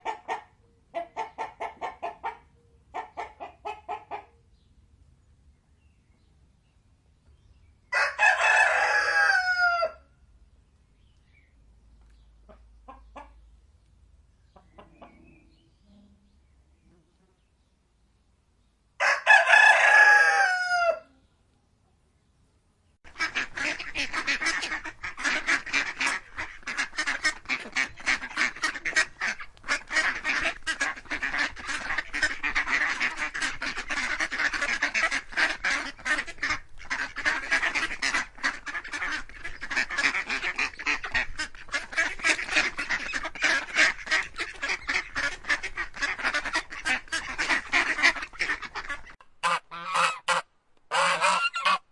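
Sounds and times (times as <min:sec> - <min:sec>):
ducks and geese quacking and honking: 0:00.0 - 0:04.3, 0:14.6 - 0:15.6, 0:23.1 - 0:51.9
rooster crowing: 0:07.9 - 0:10.1, 0:19.0 - 0:21.1.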